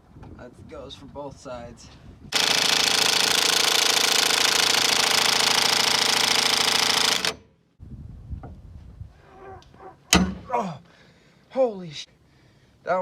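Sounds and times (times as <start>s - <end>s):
impact wrench hammering: 2.3s - 7.5s, 10.1s - 10.5s
tool knocks: 10.1s - 10.5s.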